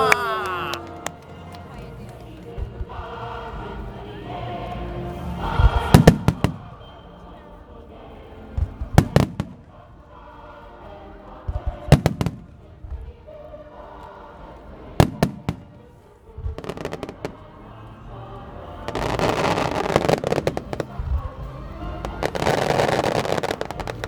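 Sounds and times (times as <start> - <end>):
music: 0.0 - 24.0
rapid firework popping: 19.0 - 21.3, 22.1 - 24.0.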